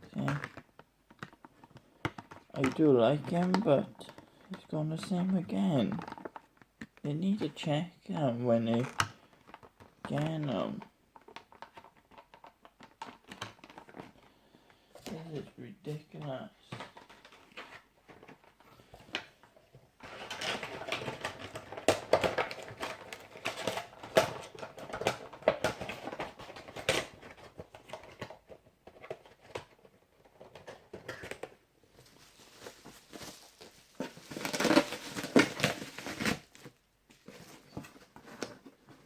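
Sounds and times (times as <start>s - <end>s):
packaging crinkling and clicking: 11.2s - 14.3s, 20.0s - 39.0s.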